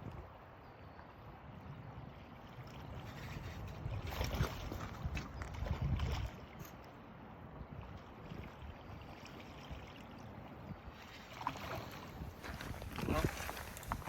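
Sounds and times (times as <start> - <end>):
flowing river water: 0.0 - 14.0
wind buffeting microphone: 2.9 - 6.4, 10.6 - 14.0.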